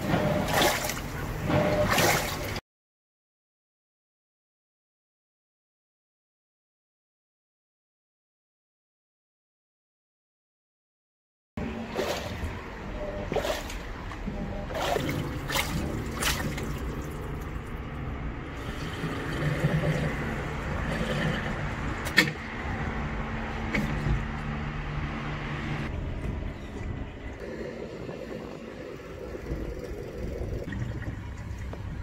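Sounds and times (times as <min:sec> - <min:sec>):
water spraying and splashing: 0:00.4 - 0:01.2, 0:01.8 - 0:02.6, 0:14.7 - 0:17.6
motor hum: 0:11.6 - 0:32.0.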